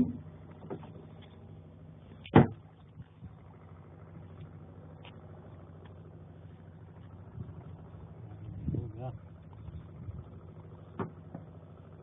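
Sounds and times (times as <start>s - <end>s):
boat engine humming: 0.0s - 12.0s.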